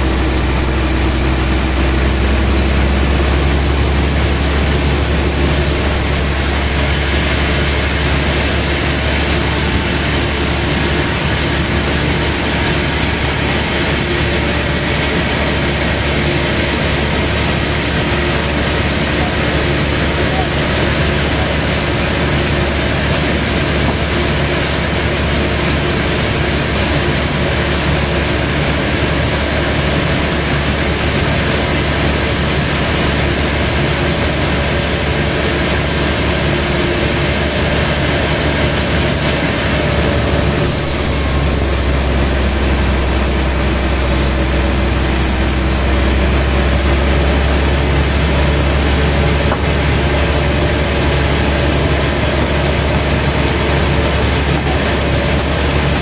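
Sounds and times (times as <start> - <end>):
low hum: 0.0 - 25.8, 38.6 - 56.0
sawmill machinery running: 0.0 - 56.0.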